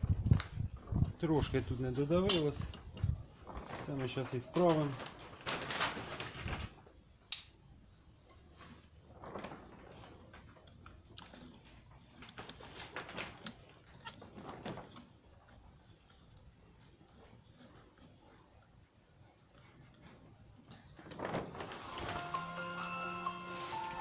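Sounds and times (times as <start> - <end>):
tools scraping and rustling: 1.5 - 6.6.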